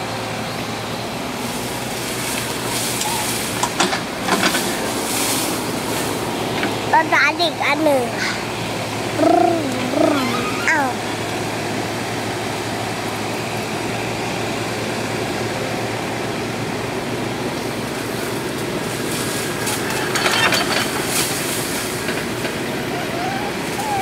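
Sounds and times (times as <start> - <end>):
excavator diesel engine running: 0.0 - 24.0
metallic clatter: 19.6 - 22.6.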